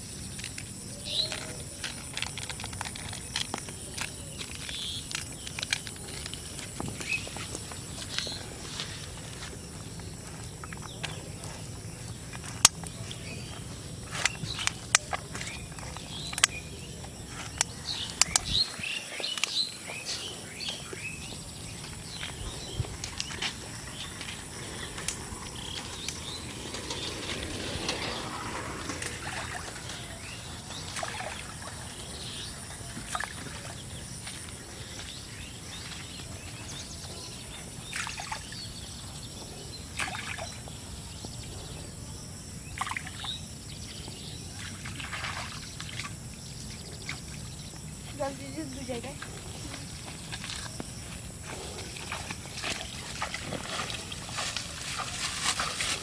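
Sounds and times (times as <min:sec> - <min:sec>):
small birds chirping: 0:00.0 - 0:56.0
sharp clicks: 0:17.6 - 0:18.6.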